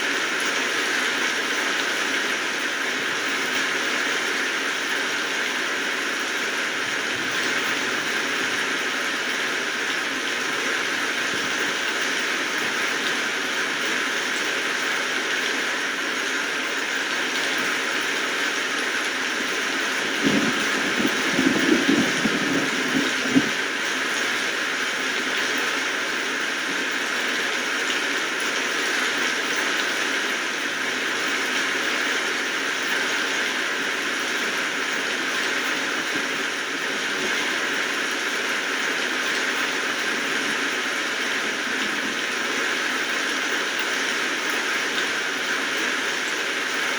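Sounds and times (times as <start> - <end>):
steady rainfall: 0.0 - 46.9.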